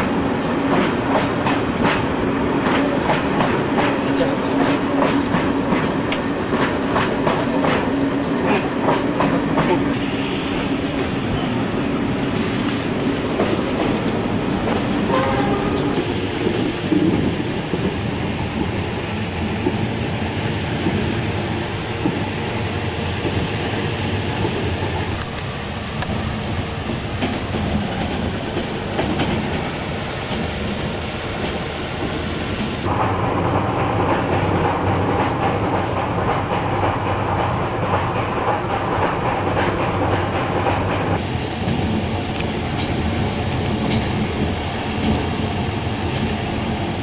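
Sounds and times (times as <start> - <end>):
train rumble and rattle: 0.0 - 47.0
high hiss: 10.0 - 16.0.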